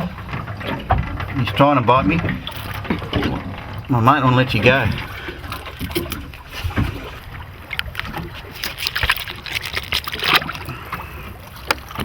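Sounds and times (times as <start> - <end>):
water slapping against hull: 0.0 - 12.0
wet splashes: 4.6 - 12.0.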